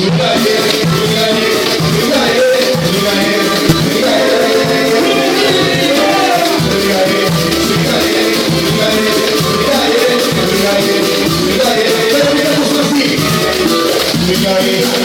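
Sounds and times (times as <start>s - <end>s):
band playing with percussion: 0.0s - 15.0s.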